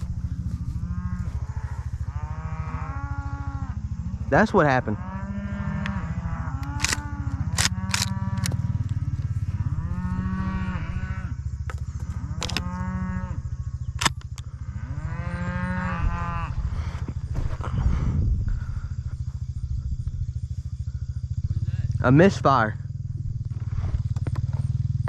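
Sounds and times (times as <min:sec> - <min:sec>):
cattle mooing: 0:00.0 - 0:13.6, 0:14.5 - 0:17.1
steady low rumble: 0:00.0 - 0:25.0
sharp clicks: 0:06.6 - 0:09.0, 0:13.9 - 0:14.5.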